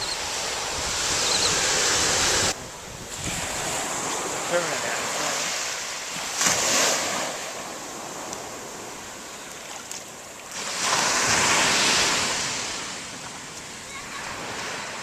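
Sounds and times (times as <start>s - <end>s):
wind buffeting microphone: 0.0s - 4.6s
ocean waves breaking: 0.0s - 15.0s.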